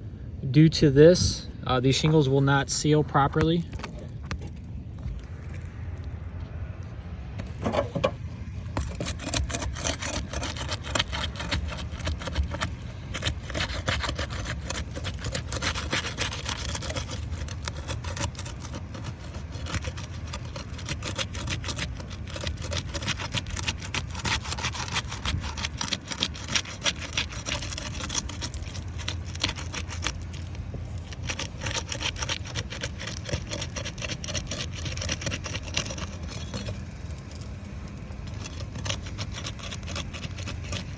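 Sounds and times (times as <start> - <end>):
steady low rumble: 0.0 - 20.8, 21.8 - 33.5
shingles crackling and scraping: 1.2 - 40.9.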